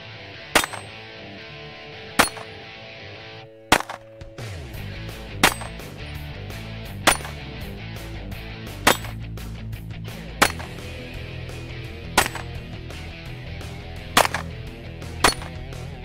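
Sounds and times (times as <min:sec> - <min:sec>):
background music: 0:00.0 - 0:16.0
pistol shots: 0:00.6 - 0:01.0, 0:02.2 - 0:02.6, 0:03.7 - 0:04.4, 0:05.3 - 0:06.0, 0:07.0 - 0:07.5, 0:08.8 - 0:09.2, 0:10.4 - 0:11.0, 0:12.1 - 0:12.6, 0:14.1 - 0:15.7.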